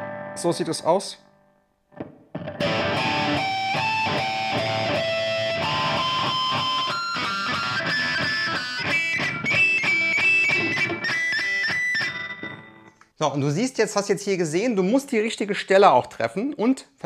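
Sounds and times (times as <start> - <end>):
electric guitar pinch harmonics: 2.4 - 13.0.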